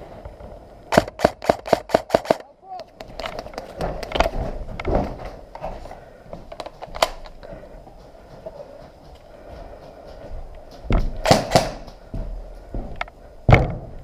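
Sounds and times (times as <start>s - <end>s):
sharp crack: 0.9s - 2.9s.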